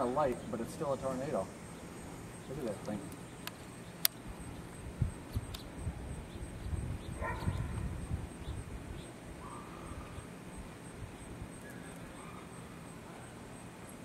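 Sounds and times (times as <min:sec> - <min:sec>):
sharp clicks: 0:02.8 - 0:04.2, 0:05.3 - 0:05.7
wind rumble on microphone: 0:04.3 - 0:11.6.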